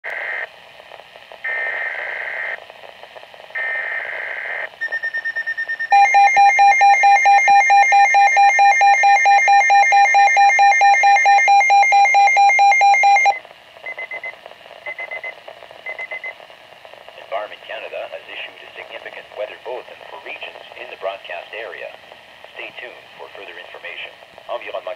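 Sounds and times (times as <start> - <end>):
rapidly pulsing alarm tone: 4.8 - 13.4.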